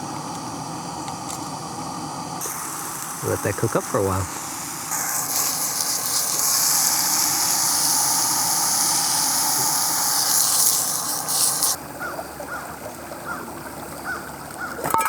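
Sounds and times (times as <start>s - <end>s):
hot dogs sizzling in a pan: 0.0s - 11.8s.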